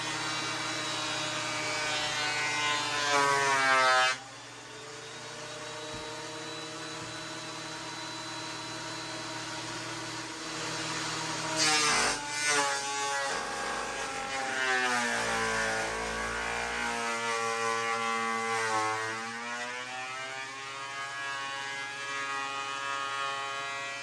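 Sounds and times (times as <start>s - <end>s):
planer motor whine: 0.0s - 3.1s, 4.1s - 11.6s.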